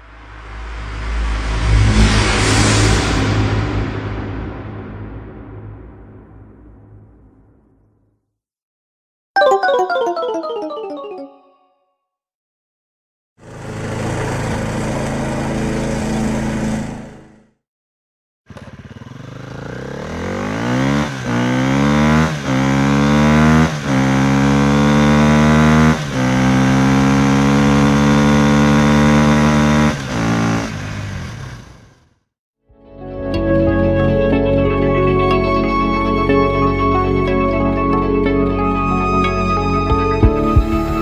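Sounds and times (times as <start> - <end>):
car engine accelerating: 18.5 - 31.9.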